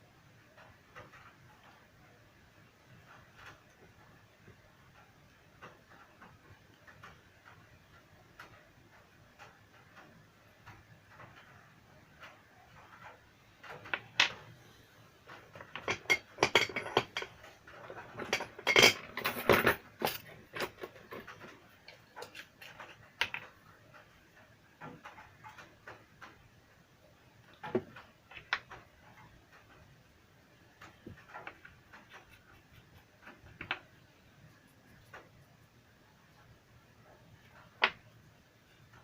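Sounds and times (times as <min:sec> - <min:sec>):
small hard objects clicking and clattering: 0:15.3 - 0:24.0, 0:27.4 - 0:29.8, 0:30.8 - 0:35.4.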